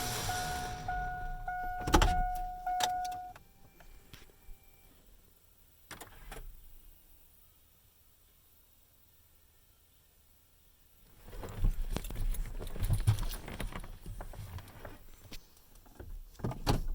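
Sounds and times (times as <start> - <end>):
truck engine running: 0.0 - 3.2
electronic warning tone: 0.0 - 3.5.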